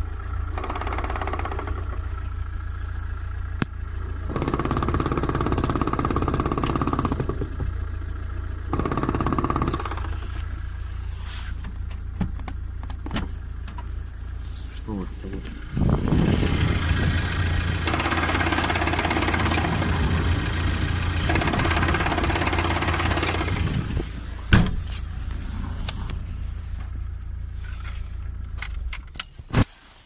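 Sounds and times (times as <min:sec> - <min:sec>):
car engine running: 0:00.0 - 0:29.3
gearbox rattling and knocking: 0:04.3 - 0:07.7, 0:08.7 - 0:10.2, 0:17.8 - 0:23.9
man talking: 0:14.7 - 0:15.7.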